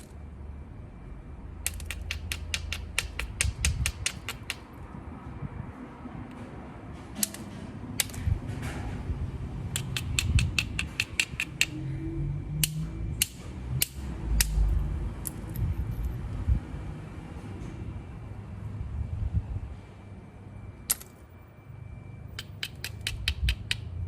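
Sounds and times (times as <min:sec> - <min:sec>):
low rumble of stone handled: 0:01.6 - 0:04.9
stone knapping clicks: 0:01.7 - 0:04.7, 0:09.7 - 0:11.8, 0:12.6 - 0:14.6, 0:22.4 - 0:23.9.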